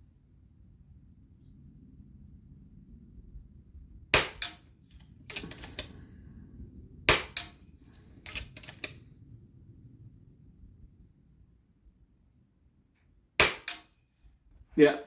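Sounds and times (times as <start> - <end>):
air rifle shots: 4.1 - 4.7, 5.3 - 6.2, 7.1 - 9.0, 13.4 - 13.9
rifle action metallic clicks: 4.2 - 6.0, 7.1 - 7.6, 8.2 - 9.0, 13.4 - 13.9.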